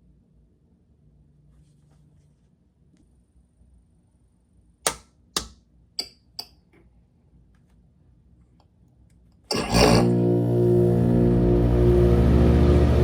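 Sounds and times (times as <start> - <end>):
heat pump humming: 9.5 - 13.0.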